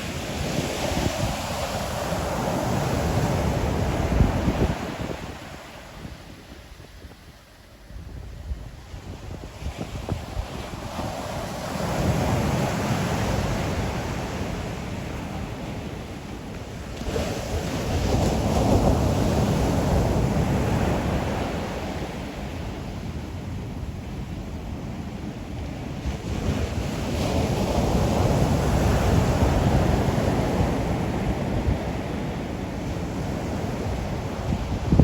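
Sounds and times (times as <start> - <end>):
ocean waves breaking on shore: 0.0 - 35.0.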